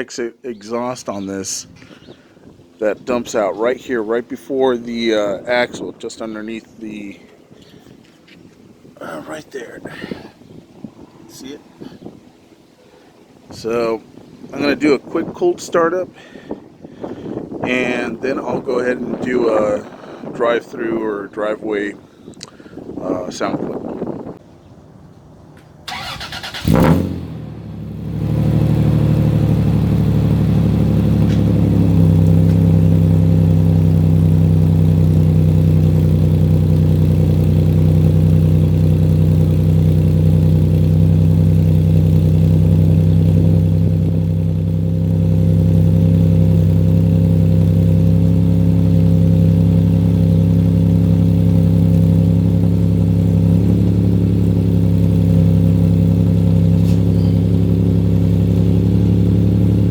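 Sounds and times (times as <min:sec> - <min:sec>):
engine cranking and idling: 0:25.9 - 0:59.9.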